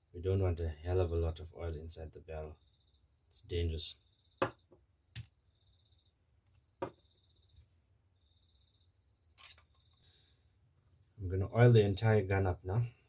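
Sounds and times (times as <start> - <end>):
brief rustle: 9.4 - 9.9.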